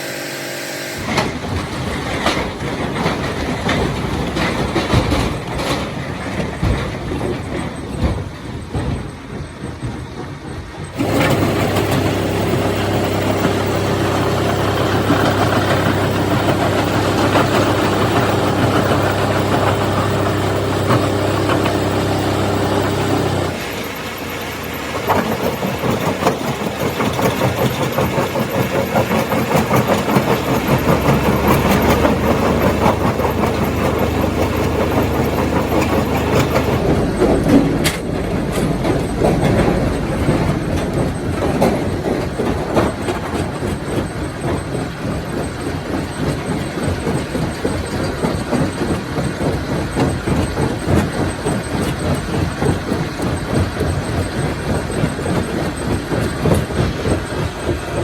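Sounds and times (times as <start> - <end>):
machine motor humming: 0.0 - 1.7, 11.0 - 23.9, 25.1 - 42.6
rough uneven machine noise: 0.0 - 6.7, 10.9 - 58.0.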